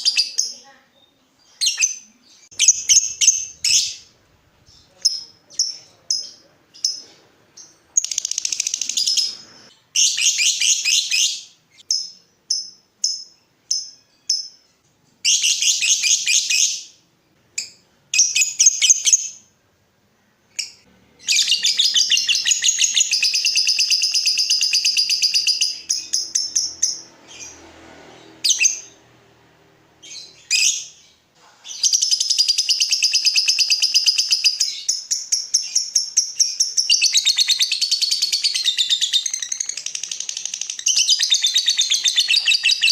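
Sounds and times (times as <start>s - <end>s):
lovebird chattering and trilling: 1.4s - 14.6s, 20.5s - 27.6s, 31.7s - 42.9s.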